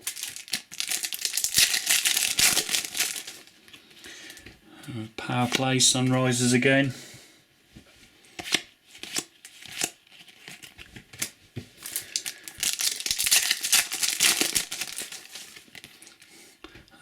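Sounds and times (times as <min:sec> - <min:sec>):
wrapper crinkling: 0:00.0 - 0:03.5, 0:09.0 - 0:16.2.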